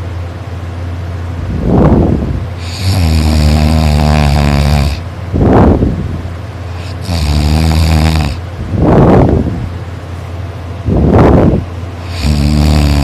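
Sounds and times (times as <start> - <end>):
person snoring loudly: 2.6 - 5.1, 6.7 - 8.4, 12.0 - 13.0.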